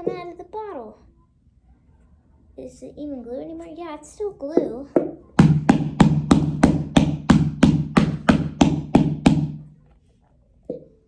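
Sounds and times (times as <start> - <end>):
plastic bottle being knocked: 5.0 - 9.7.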